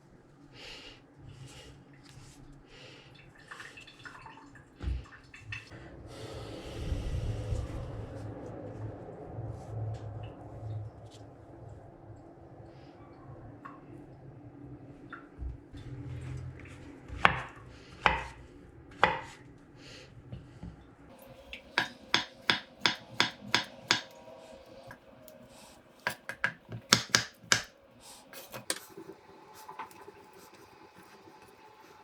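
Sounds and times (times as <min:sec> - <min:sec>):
utensils knocking on hard surface: 0:21.8 - 0:24.1.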